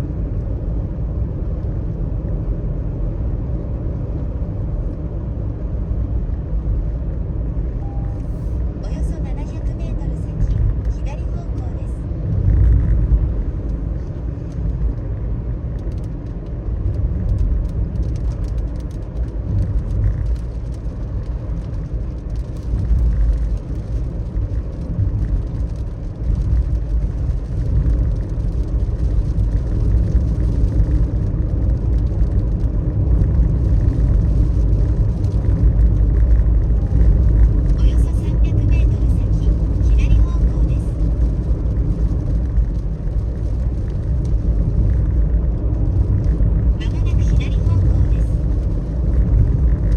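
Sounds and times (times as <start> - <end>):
car engine and tyres on wet road: 0.0 - 49.9
raindrops ticking: 15.7 - 49.9.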